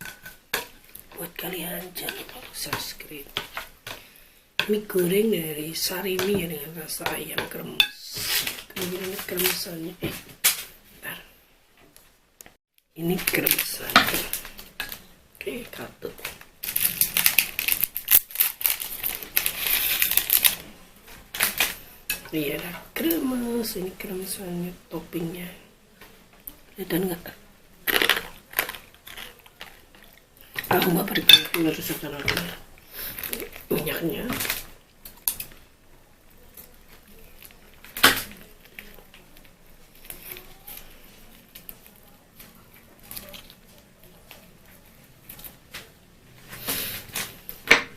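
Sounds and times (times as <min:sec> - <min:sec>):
plastic sachet crinkling: 0:13.1 - 0:14.7, 0:16.2 - 0:20.6.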